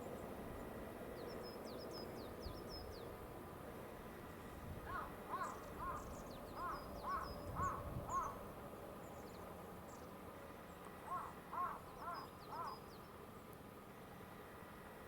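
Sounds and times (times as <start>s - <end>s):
bird calling: 4.9s - 8.4s, 11.1s - 12.9s.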